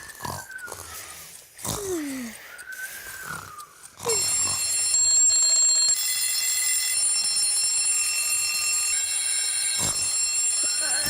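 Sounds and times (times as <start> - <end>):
alarm clock bells ringing: 3.8 - 11.0.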